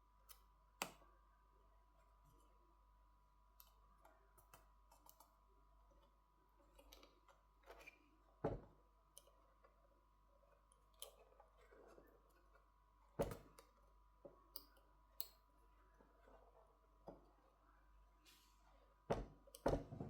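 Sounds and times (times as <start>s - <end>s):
faint high hum: 7.8s - 20.0s.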